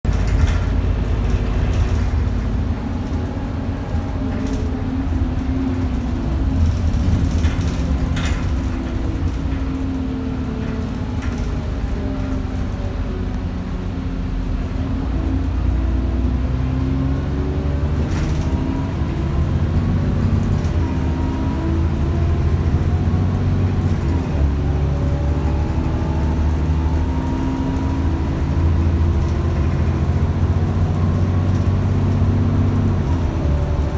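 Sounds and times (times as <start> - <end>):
bus engine drone: 0.0 - 33.9.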